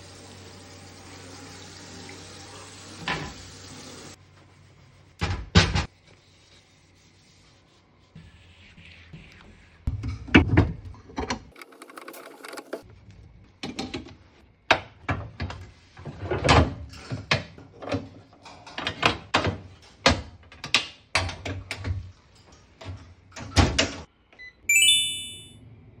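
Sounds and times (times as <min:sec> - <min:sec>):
short bright ding: 0:24.7 - 0:25.6.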